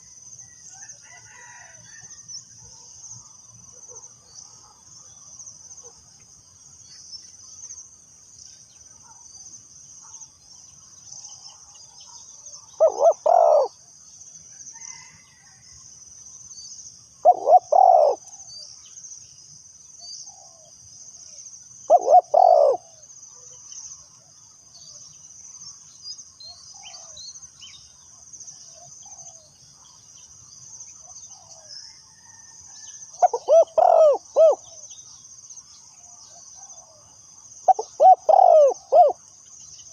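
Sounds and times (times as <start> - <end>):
dove cooing: 12.8 - 13.8, 17.2 - 18.3, 21.9 - 23.0, 33.2 - 34.7, 37.7 - 39.2.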